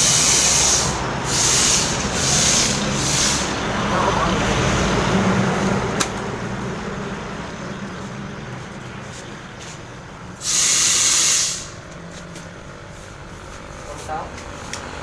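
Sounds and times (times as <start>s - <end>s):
compressed air hissing from hose: 0.0s - 3.6s, 10.4s - 11.8s.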